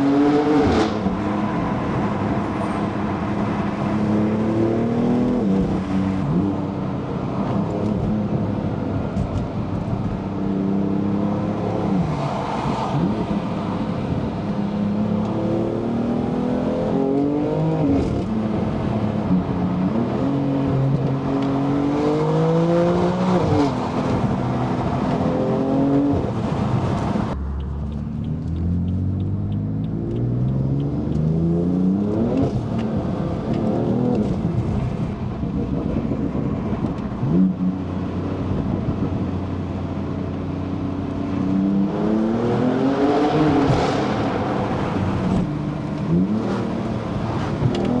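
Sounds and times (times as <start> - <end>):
car engine accelerating through gears: 0.0 - 48.0.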